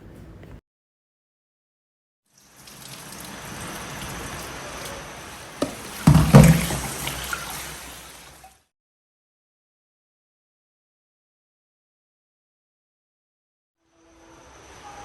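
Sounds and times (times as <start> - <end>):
running water hissing: 2.4 - 8.6
loud knocks: 5.6 - 7.0.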